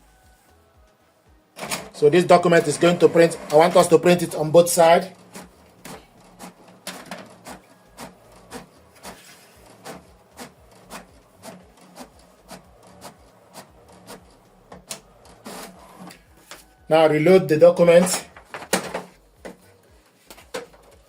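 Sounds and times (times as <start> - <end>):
printer carriage clicking: 1.6 - 16.6, 17.8 - 19.6, 20.4 - 21.0
printer motor hum: 1.6 - 16.9.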